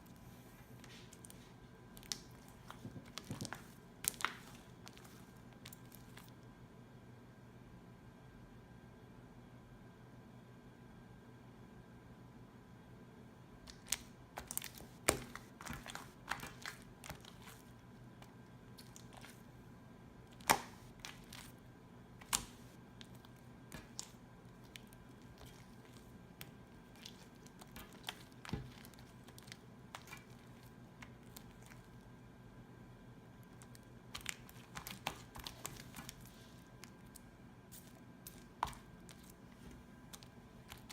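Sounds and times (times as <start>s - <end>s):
slime sticky clicks and crackles: 1.9s - 6.3s, 13.7s - 17.6s, 22.2s - 31.9s, 33.5s - 39.4s.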